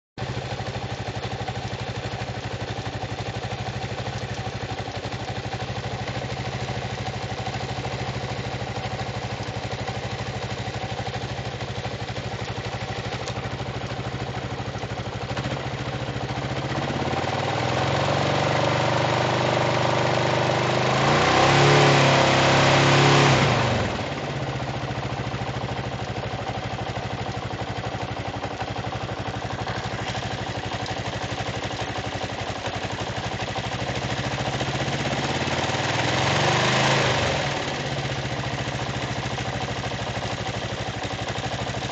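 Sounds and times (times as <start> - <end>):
motorcycle engine idling with tick: 0.0 - 41.9
engine revving: 16.5 - 24.6, 34.0 - 38.8.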